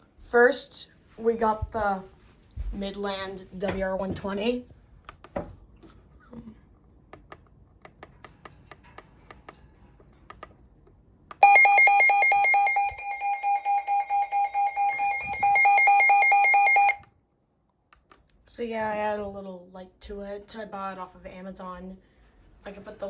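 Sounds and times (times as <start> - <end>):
two-tone electronic warble alarm: 11.4 - 17.0.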